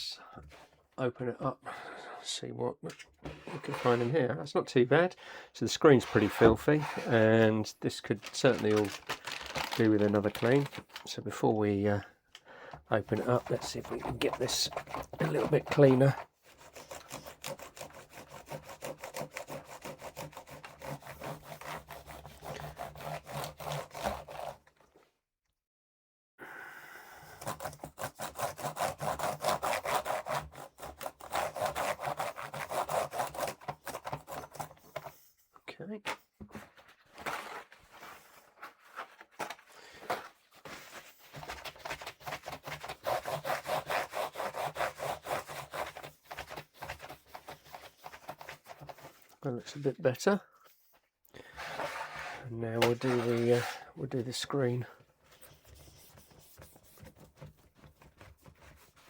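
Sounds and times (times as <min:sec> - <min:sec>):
scrubbing laptop casing: 0:13.0 - 0:17.9.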